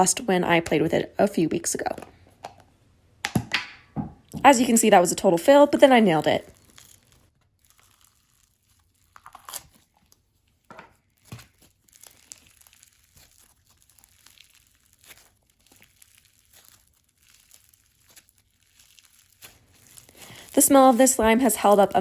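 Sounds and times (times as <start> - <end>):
slime crackling and popping: 4.7 - 22.0.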